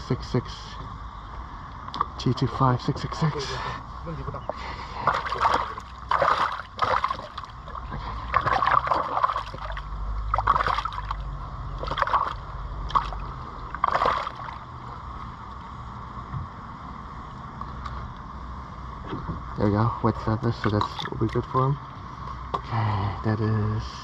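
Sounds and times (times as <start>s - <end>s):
steady low rumble: 0.0s - 24.0s
water splashing and sloshing: 3.2s - 15.4s, 20.5s - 22.6s.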